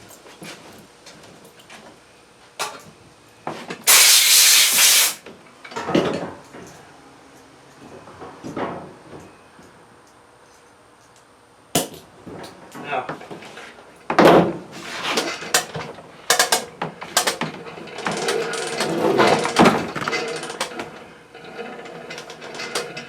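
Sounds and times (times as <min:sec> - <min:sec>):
pressurized hiss: 0:03.9 - 0:05.2.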